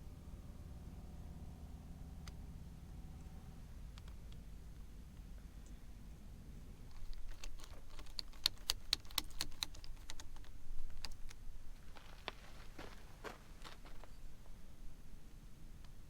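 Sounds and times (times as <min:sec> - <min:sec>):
metallic clicks and taps: 0:06.9 - 0:11.4.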